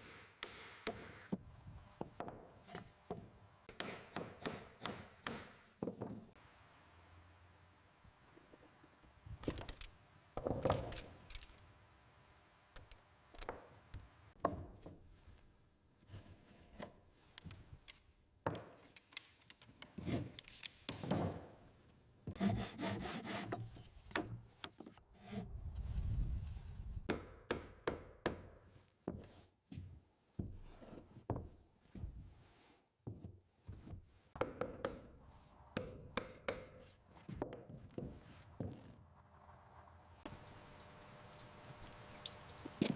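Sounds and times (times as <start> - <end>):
hand tools scraping wood: 22.3 - 25.6.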